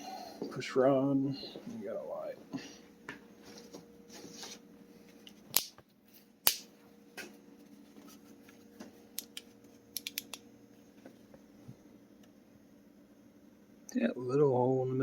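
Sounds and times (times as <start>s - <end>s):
faint steady hum: 0.0s - 15.0s
sharp clicks of objects handled: 5.2s - 5.8s, 6.4s - 7.3s, 9.1s - 10.4s.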